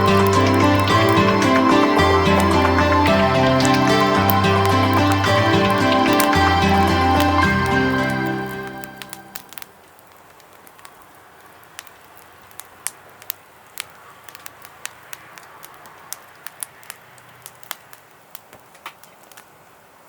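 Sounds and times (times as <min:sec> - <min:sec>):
wood fire crackling: 0:00.0 - 0:20.0.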